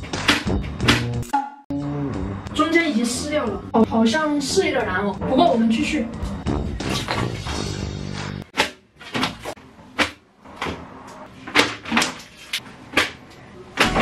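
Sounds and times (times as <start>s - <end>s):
background music: 0.0s - 8.5s.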